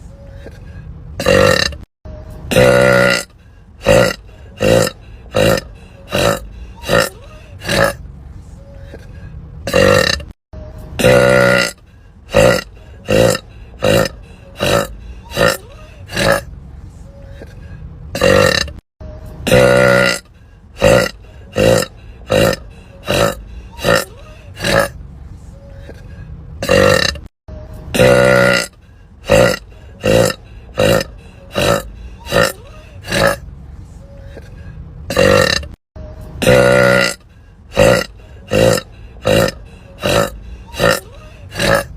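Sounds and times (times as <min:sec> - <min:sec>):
woman burping: 0:01.2 - 0:01.9, 0:02.5 - 0:08.0, 0:09.7 - 0:10.4, 0:11.0 - 0:16.4, 0:18.2 - 0:18.8, 0:19.4 - 0:20.2, 0:20.8 - 0:24.9, 0:26.6 - 0:27.3, 0:27.9 - 0:28.7, 0:29.3 - 0:33.4, 0:35.1 - 0:35.8, 0:36.4 - 0:37.2, 0:37.8 - 0:41.9.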